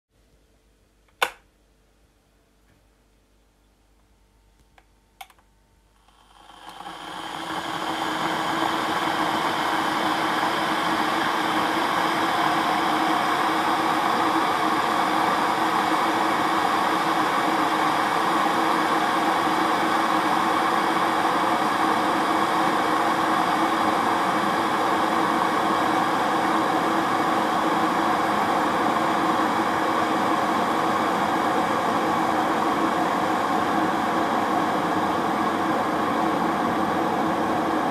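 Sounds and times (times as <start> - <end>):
kettle switch click: 1.1 - 1.4
kettle water boiling: 6.0 - 37.9.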